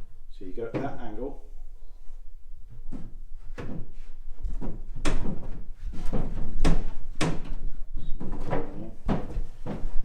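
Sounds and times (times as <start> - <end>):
wooden shelf knocking: 8.2 - 10.0.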